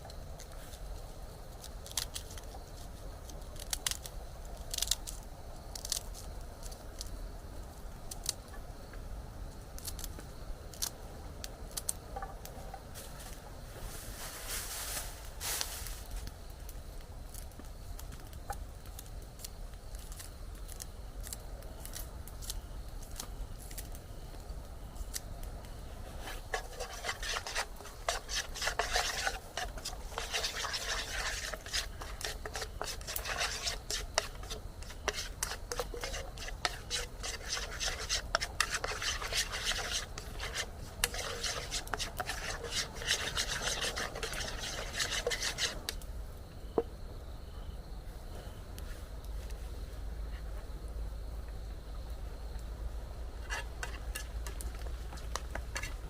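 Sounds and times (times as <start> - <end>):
rapid rasping scraping strokes: 26.0 - 46.0, 53.4 - 56.0.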